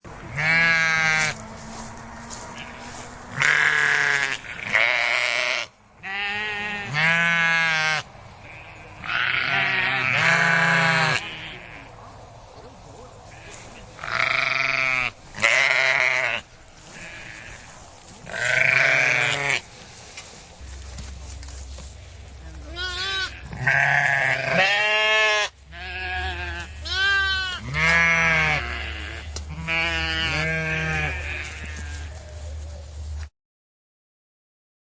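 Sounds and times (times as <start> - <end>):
sheep bleating: 0.3 - 1.4, 2.3 - 11.9, 13.3 - 19.7, 22.5 - 32.2
steady low rumble: 11.3 - 33.3.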